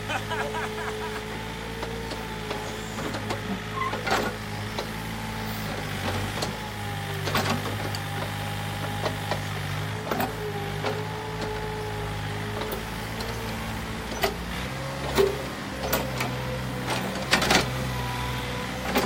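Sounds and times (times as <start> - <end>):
excavator diesel engine running: 0.0 - 19.0
hydraulic whine: 0.8 - 8.2.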